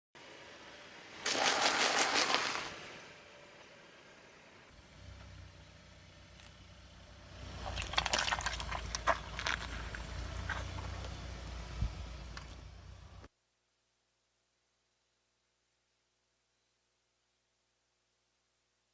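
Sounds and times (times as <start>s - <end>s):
car engine rumbling: 0.2s - 13.3s
wet liquid squishing: 1.2s - 2.8s, 7.6s - 11.1s.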